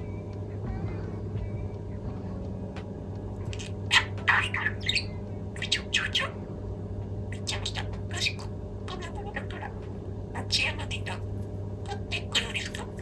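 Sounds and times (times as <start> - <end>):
budgerigar warbling and chirping: 3.5 - 6.4, 7.3 - 9.7, 10.4 - 11.2, 11.9 - 13.0.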